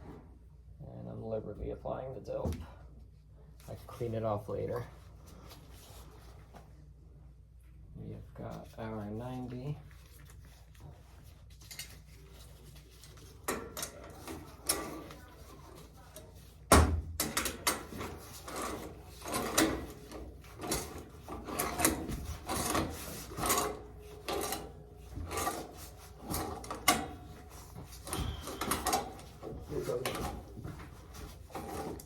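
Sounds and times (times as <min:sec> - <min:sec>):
pipe fitting scraping on threads: 0:17.4 - 0:30.5.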